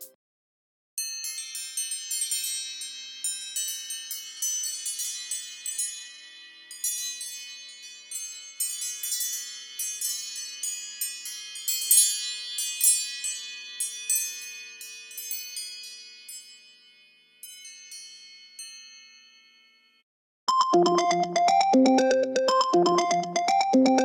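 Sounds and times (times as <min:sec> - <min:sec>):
bell-like phone ringtone: 0:19.5 - 0:24.0.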